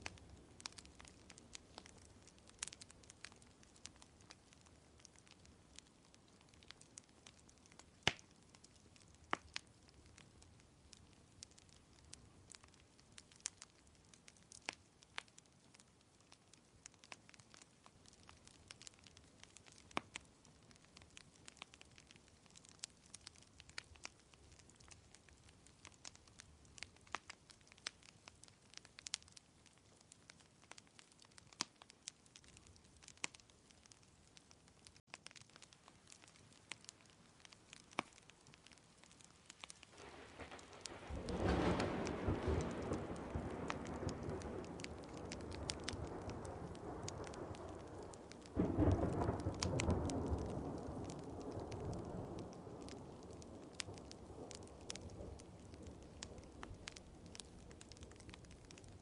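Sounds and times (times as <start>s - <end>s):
faint steady hiss: 0.0s - 59.0s
wood fire crackling: 0.0s - 59.0s.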